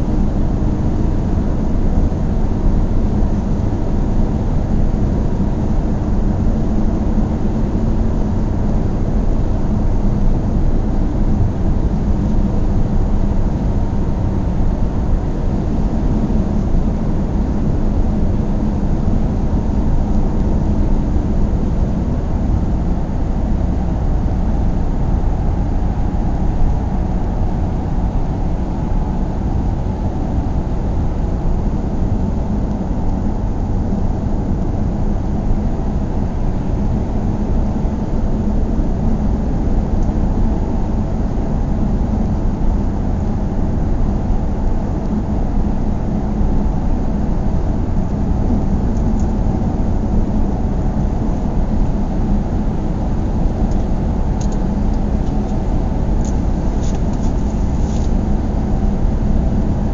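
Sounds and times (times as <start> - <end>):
car engine and road noise: 0.4 - 32.9, 45.1 - 59.7.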